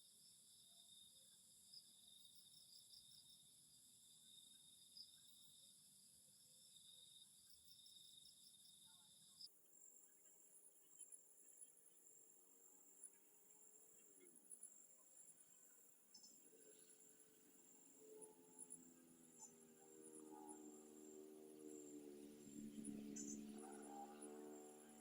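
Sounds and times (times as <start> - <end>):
crickets and insects chirping: 9.8 - 25.0.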